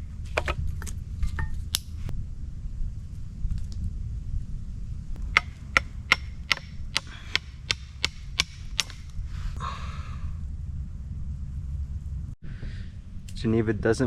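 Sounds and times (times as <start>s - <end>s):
low rumble: 0.0s - 14.0s
axe chopping firewood: 5.2s - 9.2s.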